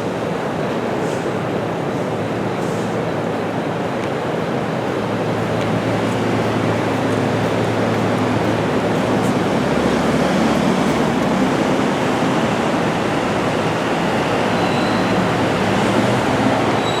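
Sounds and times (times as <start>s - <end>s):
train passing close by: 0.0s - 17.0s
wheel-on-rail rushing noise: 5.1s - 17.0s.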